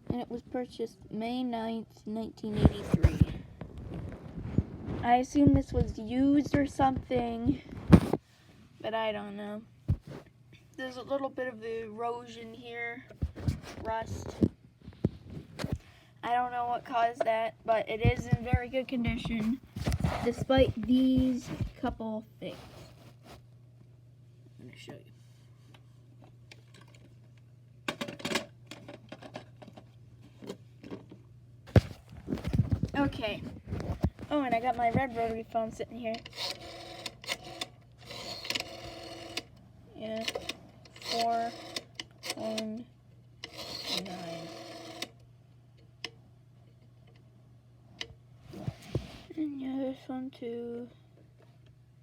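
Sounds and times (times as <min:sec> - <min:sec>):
steady low hum: 0:00.0 - 0:52.0
rotary phone dial whirring: 0:36.1 - 0:42.8, 0:43.4 - 0:45.3.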